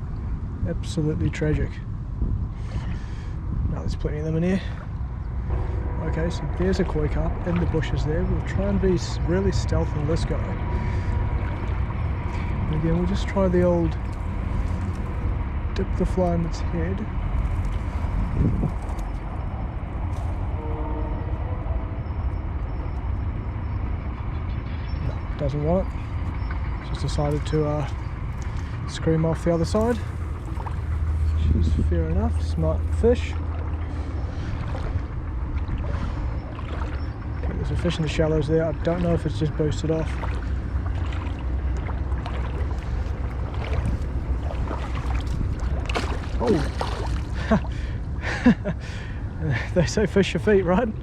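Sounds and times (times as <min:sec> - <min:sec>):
low outdoor rumble: 0:00.0 - 0:51.0
wind buffeting microphone: 0:00.0 - 0:51.0.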